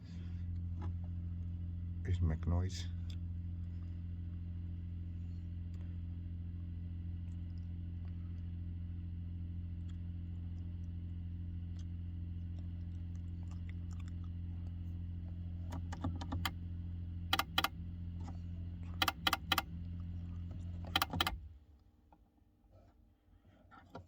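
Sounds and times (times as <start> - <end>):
sharp clicks: 17.3 - 17.7, 19.0 - 19.7, 20.9 - 21.4
heating timer electrical buzz: 17.3 - 17.8, 19.0 - 19.7, 20.9 - 21.4.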